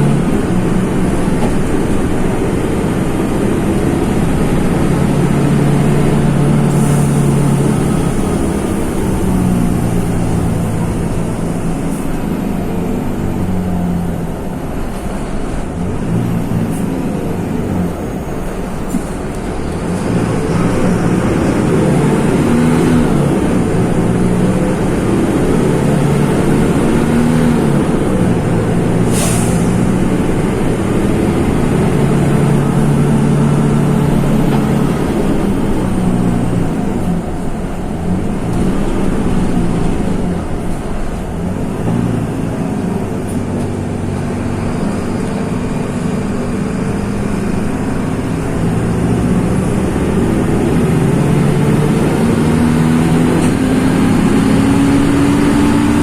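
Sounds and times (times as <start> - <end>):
bus diesel engine running: 0.0 - 56.0
air hiss: 6.7 - 13.1, 29.0 - 30.0.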